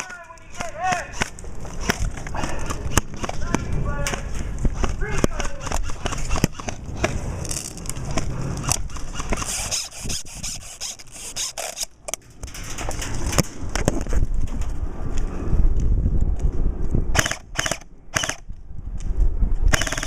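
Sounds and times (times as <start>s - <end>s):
low rumble and rustle: 0.1s - 9.7s, 11.0s - 19.8s
airsoft gun shots: 17.2s - 18.4s.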